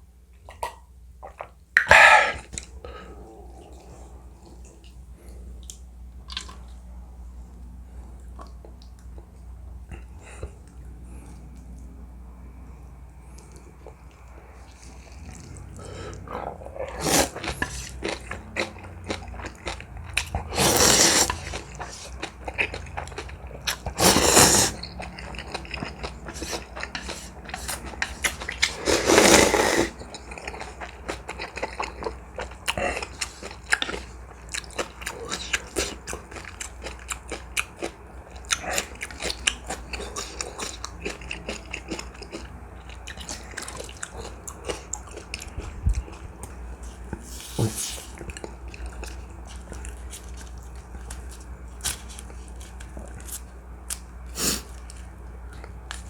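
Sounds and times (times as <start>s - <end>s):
chewing and crunching: 0.4s - 12.0s, 13.2s - 56.0s
wet mouth clicks: 0.5s - 2.7s
loud slurps: 1.8s - 2.5s, 16.9s - 18.0s, 20.4s - 22.1s, 23.9s - 24.9s, 26.3s - 30.0s, 54.4s - 54.8s.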